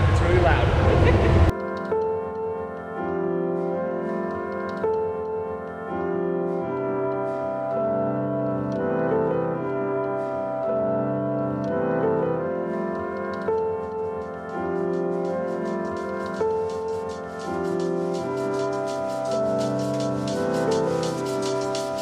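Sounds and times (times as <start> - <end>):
sustained keyboard chords: 0.0 - 22.0
light ticking percussion: 13.2 - 22.0.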